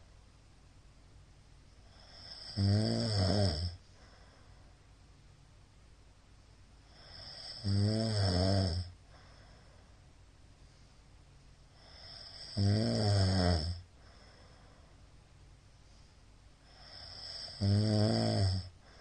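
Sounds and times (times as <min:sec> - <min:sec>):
man snoring loudly: 0:01.9 - 0:03.8, 0:06.9 - 0:08.9, 0:11.8 - 0:13.8, 0:16.7 - 0:18.7.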